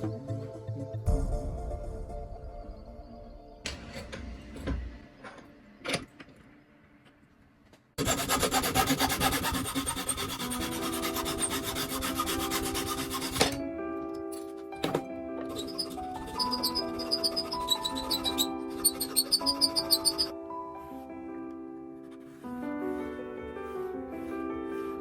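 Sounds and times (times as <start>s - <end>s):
fast rasping strokes on metal: 8.0s - 13.6s, 15.5s - 20.3s.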